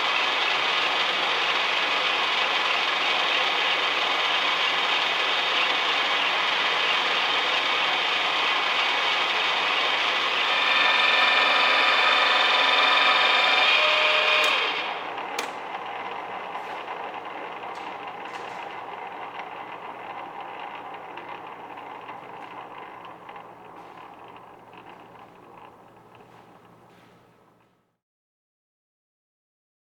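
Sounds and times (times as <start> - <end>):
milling machine whirring: 0.1 - 27.6
click: 12.7 - 15.8.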